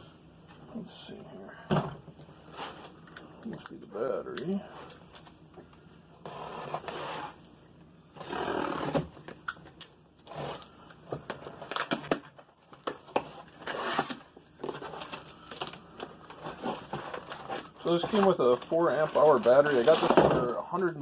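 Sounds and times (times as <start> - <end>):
packaging rustling and tearing: 10.2 - 20.5.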